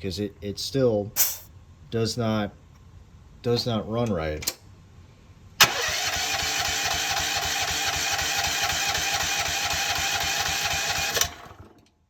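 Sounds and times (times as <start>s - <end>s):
electric starter cranking engine: 5.6s - 11.9s.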